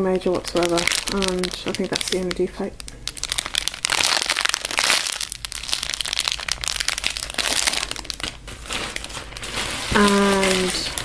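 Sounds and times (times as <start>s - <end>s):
plastic bags crinkling: 0.0s - 11.0s.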